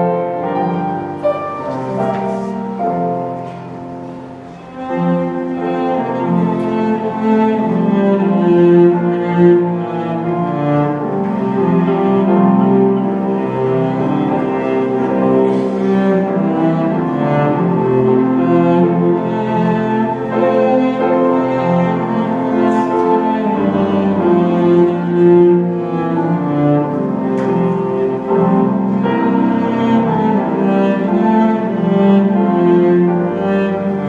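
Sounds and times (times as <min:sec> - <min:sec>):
orchestra strings playing: 0:00.0 - 0:34.0.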